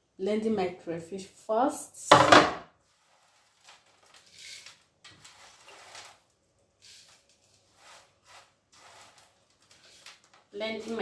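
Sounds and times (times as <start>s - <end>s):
kitchen items rustling and knocking: 2.1s - 2.7s.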